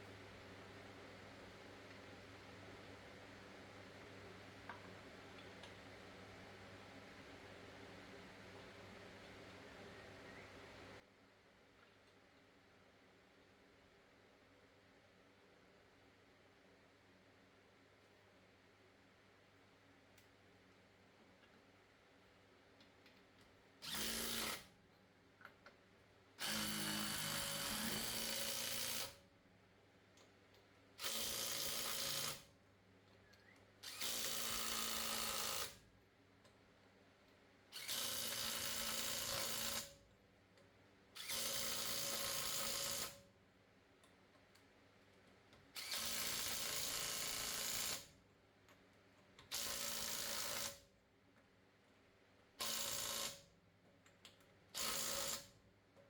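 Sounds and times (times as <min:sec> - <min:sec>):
electric drill bursts: 0:23.8 - 0:24.7, 0:26.4 - 0:29.2, 0:31.0 - 0:32.4, 0:33.8 - 0:35.8, 0:37.8 - 0:39.9, 0:41.2 - 0:43.2, 0:45.8 - 0:48.1, 0:49.5 - 0:50.8, 0:52.6 - 0:53.4, 0:54.8 - 0:55.5.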